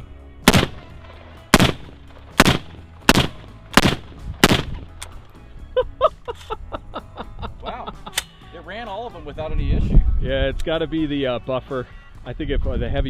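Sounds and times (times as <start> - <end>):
suppressed rifle shots: 0.4 - 5.2.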